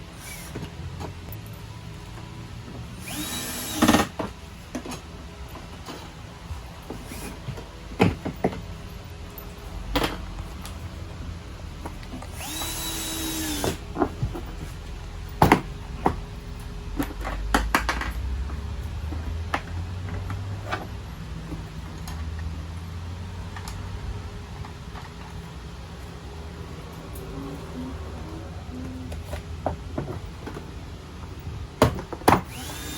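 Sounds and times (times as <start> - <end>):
power drill running: 0.0 - 0.6, 2.9 - 4.2, 12.2 - 13.8, 32.4 - 32.9
clicks and knocks of parts: 16.9 - 22.6.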